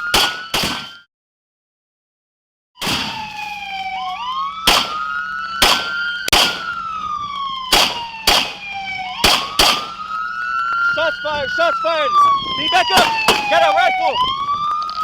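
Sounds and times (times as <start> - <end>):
police siren wailing: 0.0 - 1.1, 2.8 - 15.0
loud gunshots: 0.1 - 0.9, 4.6 - 5.0, 5.6 - 6.7, 7.7 - 8.6, 9.2 - 9.9.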